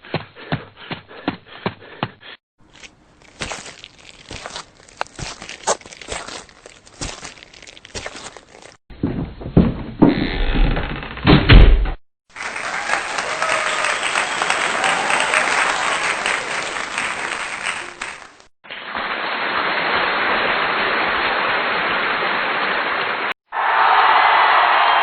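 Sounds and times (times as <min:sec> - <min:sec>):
loud knocks and thumps: 0:08.9 - 0:10.1
audience applause: 0:12.3 - 0:18.5, 0:19.1 - 0:25.0.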